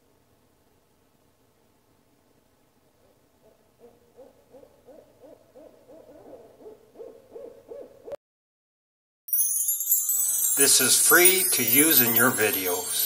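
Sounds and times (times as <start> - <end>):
owl hooting: 3.0 - 8.2.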